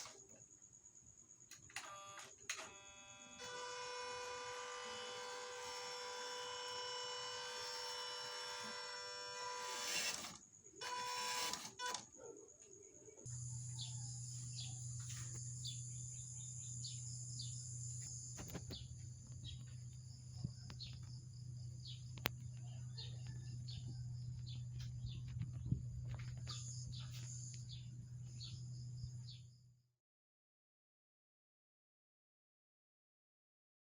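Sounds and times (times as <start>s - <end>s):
small electric motor whining: 1.8s - 12.1s
steady low hum: 13.3s - 29.8s.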